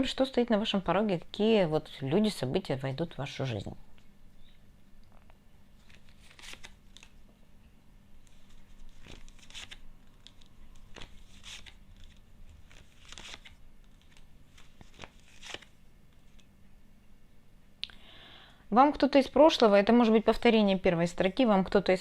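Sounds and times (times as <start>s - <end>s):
faint low hum: 0.0s - 22.0s
cards sliding on cards: 8.2s - 16.5s.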